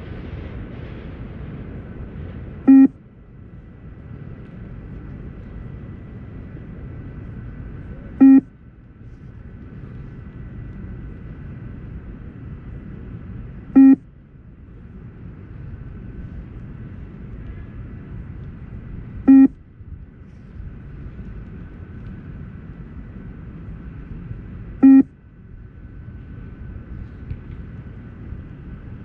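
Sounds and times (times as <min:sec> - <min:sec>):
steady background noise: 0:00.0 - 0:29.0
short electronic beep: 0:02.7 - 0:02.9, 0:08.2 - 0:08.5, 0:13.8 - 0:14.0, 0:19.3 - 0:19.5, 0:24.8 - 0:25.1.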